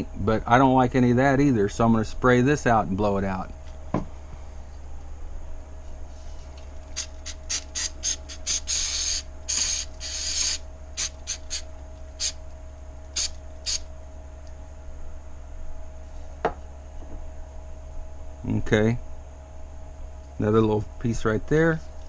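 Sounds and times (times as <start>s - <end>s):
aerosol spray spurts: 7.0s - 11.6s.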